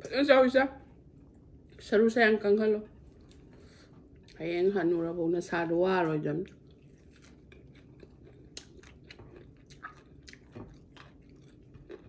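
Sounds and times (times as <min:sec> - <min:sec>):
person chewing and crunching: 0:06.4 - 0:12.0.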